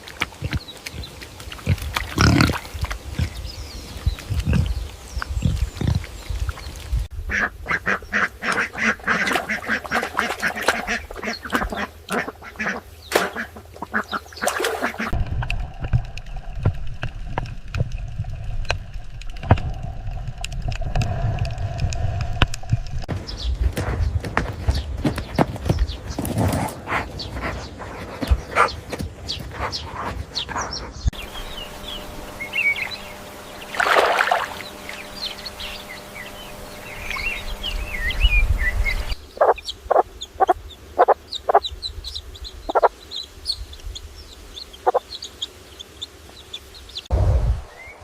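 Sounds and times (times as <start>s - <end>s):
ducks quacking: 7.3s - 15.2s, 38.9s - 41.7s, 42.7s - 42.9s, 44.8s - 45.0s.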